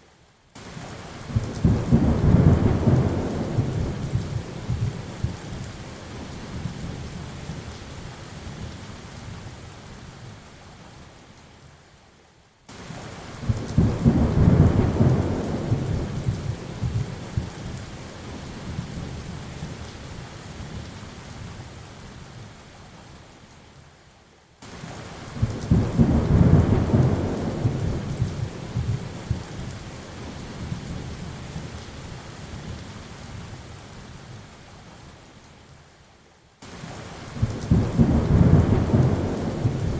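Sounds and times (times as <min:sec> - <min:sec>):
steady rain hissing: 0:00.0 - 0:39.9
rolling thunder: 0:13.7 - 0:17.5, 0:25.5 - 0:29.0, 0:37.3 - 0:39.9.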